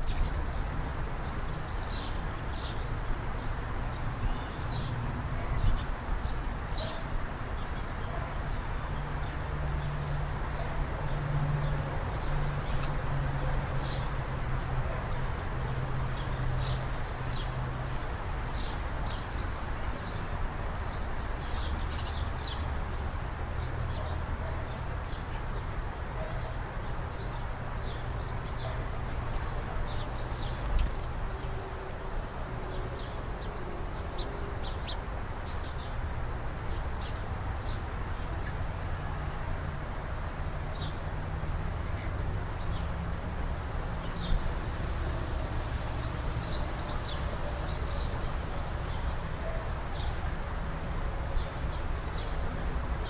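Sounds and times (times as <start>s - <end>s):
small birds chirping: 18.3s - 31.5s, 33.0s - 36.0s.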